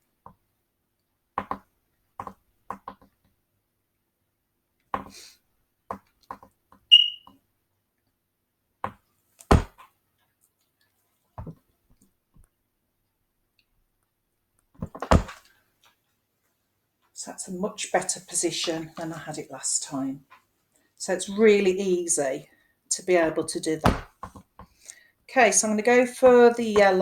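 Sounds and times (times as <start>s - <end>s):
high squeak: 6.9s - 7.3s.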